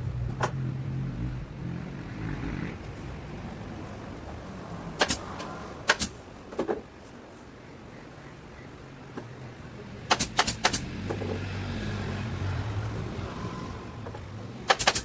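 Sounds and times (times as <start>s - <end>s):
staple gun firing: 5.0s - 5.2s, 10.1s - 10.8s, 14.7s - 15.0s.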